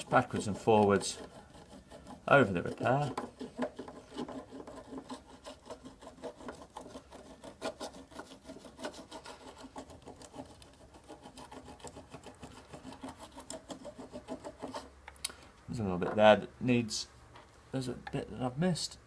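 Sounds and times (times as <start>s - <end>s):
applicator scraping over wax: 0.0s - 15.0s.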